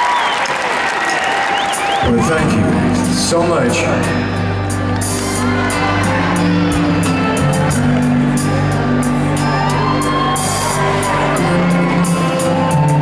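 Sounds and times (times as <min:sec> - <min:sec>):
audience whooping: 0:00.0 - 0:02.6, 0:05.0 - 0:08.0, 0:09.4 - 0:13.0.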